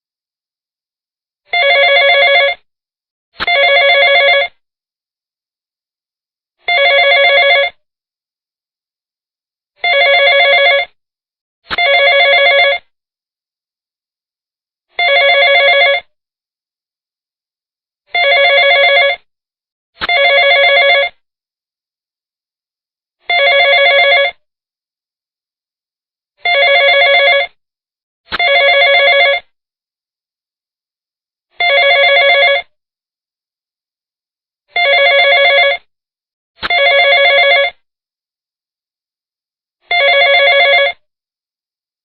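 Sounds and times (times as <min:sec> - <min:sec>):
telephone ringing: 0:01.5 - 0:02.7, 0:03.4 - 0:04.6, 0:06.7 - 0:07.8, 0:09.8 - 0:11.0, 0:11.7 - 0:12.9, 0:15.0 - 0:16.1, 0:18.1 - 0:19.3, 0:20.0 - 0:21.2, 0:23.3 - 0:24.4, 0:26.4 - 0:27.6, 0:28.3 - 0:29.5, 0:31.6 - 0:32.7, 0:34.8 - 0:35.9, 0:36.6 - 0:37.8, 0:39.9 - 0:41.1.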